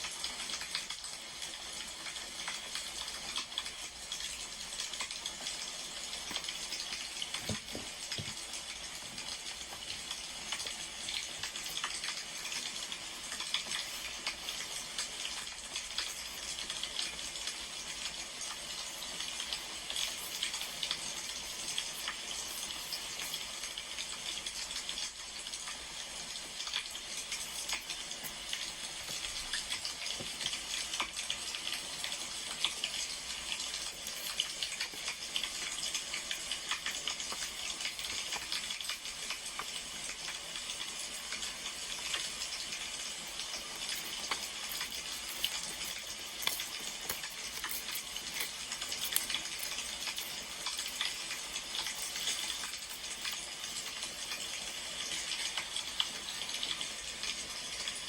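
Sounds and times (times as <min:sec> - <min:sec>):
wood fire crackling: 0:26.8 - 0:57.2.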